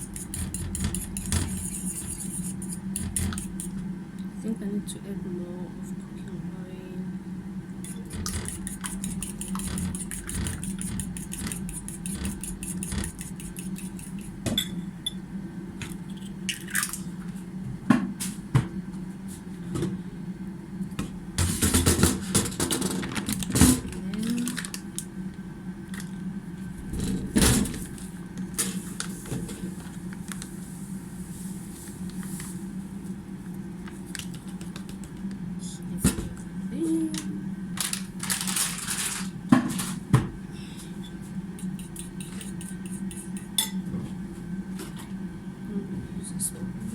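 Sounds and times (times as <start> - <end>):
steady low hum: 0.0 - 46.9
utensil clicking against bowl: 7.9 - 14.3, 41.6 - 43.6.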